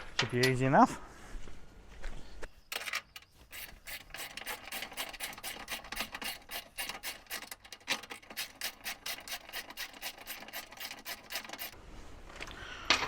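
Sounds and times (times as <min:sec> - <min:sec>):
metal scraping on metal: 0:02.7 - 0:11.8.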